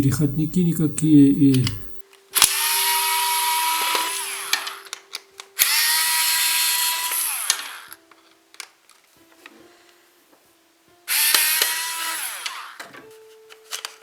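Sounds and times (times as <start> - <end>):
electric screwdriver whining: 2.4 - 8.0, 11.1 - 12.9.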